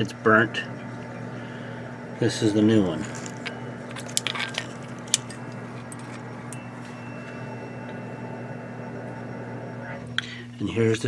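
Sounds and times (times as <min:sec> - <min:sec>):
low hum: 0:02.5 - 0:10.2
metal parts clicking and clinking: 0:02.9 - 0:06.3.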